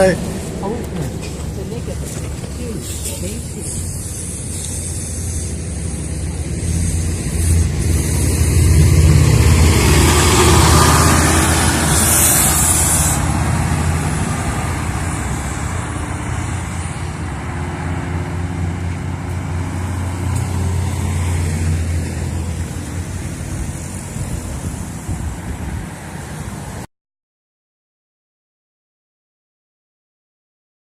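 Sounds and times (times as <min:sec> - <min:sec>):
bus engine drone: 0:00.0 - 0:26.9
hiss of air: 0:02.9 - 0:08.8, 0:10.9 - 0:14.2.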